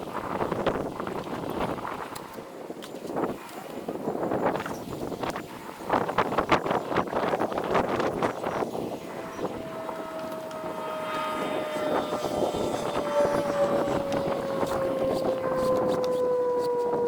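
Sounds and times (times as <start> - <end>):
engine passing by: 8.3 - 16.6.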